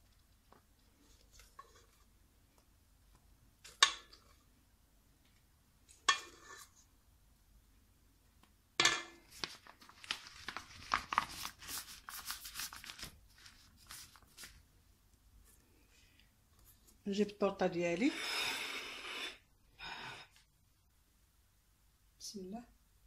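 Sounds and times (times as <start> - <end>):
plastic piping bag crinkling: 9.2 - 14.6.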